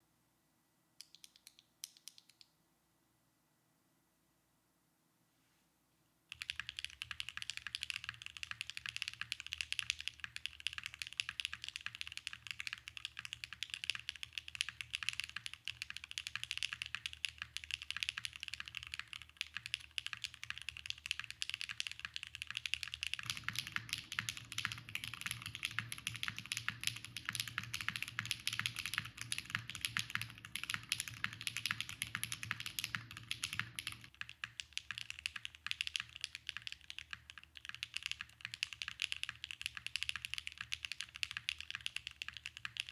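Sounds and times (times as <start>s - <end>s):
fast typing on mechanical keyboard: 6.3s - 42.9s.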